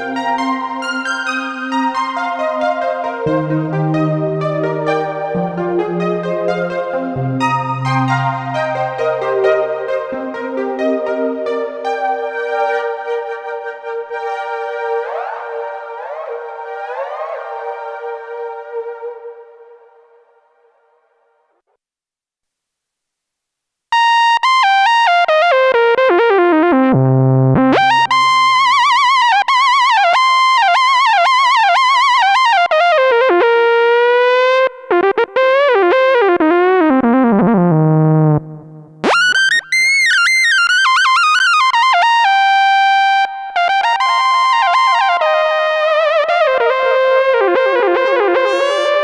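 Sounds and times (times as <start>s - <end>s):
synthesizer melody with vibrato: 0.0s - 20.2s, 24.0s - 49.0s
bright cutting synth tone: 48.0s - 49.0s.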